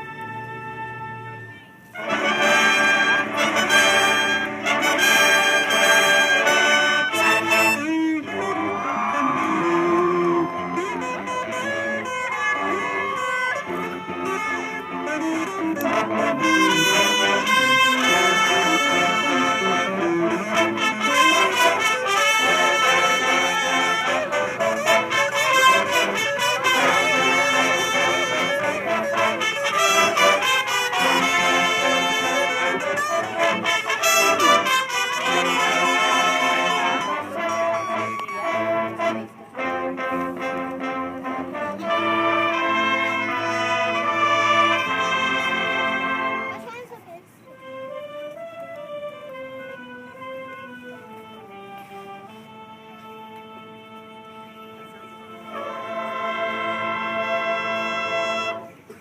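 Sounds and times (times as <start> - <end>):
marching band brass chords: 0.0 - 59.0.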